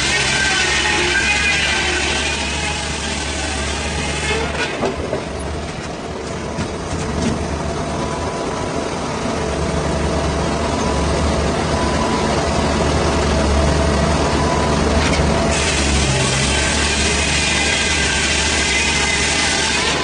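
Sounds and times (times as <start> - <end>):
heavy engine droning: 0.0 - 20.0.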